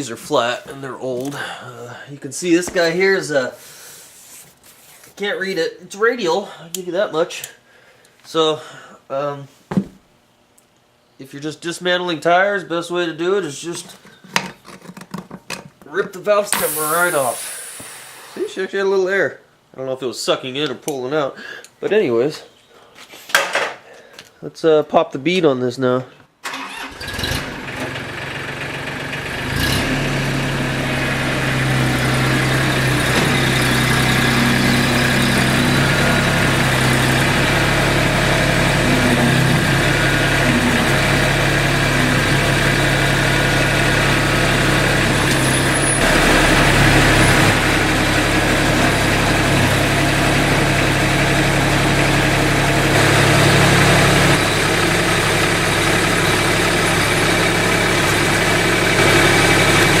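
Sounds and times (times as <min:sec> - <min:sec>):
vehicle engine idling: 0:27.9 - 1:00.0.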